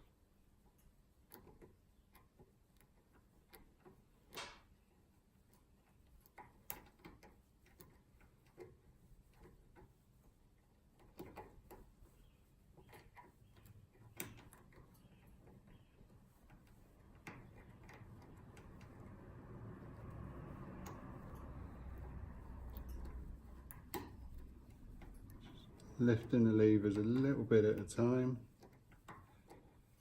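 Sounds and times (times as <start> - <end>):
metallic clicks of lock picking: 19.8 - 26.0.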